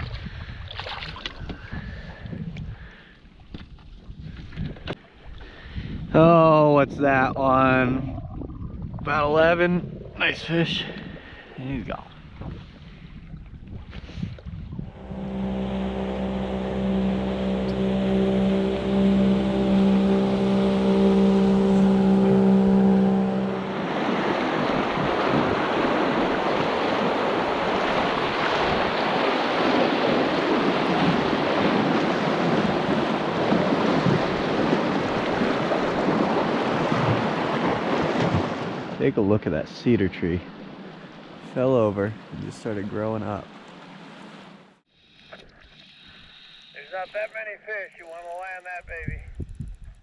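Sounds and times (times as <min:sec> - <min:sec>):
electric boat motor humming: 0:14.7 - 0:38.1
river water rushing: 0:19.2 - 0:39.0.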